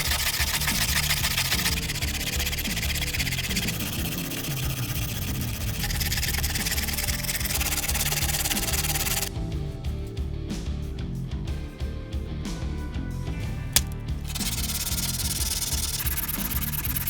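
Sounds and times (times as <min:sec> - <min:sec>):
abrasive rubbing: 0:00.0 - 0:09.3, 0:13.8 - 0:17.0
background music with low bassline: 0:00.0 - 0:17.0.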